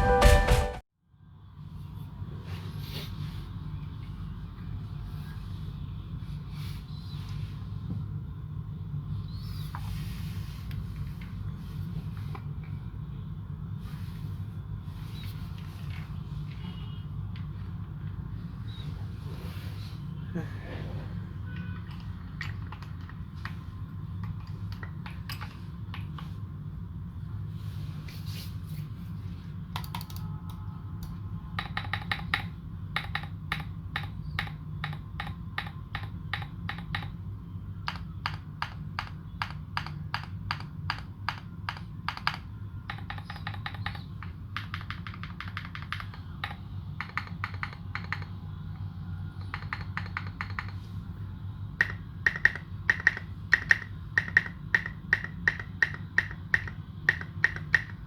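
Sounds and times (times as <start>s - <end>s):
mechanical keyboard typing: 29.8s - 30.3s, 37.8s - 48.4s, 49.4s - 50.8s, 51.8s - 58.0s.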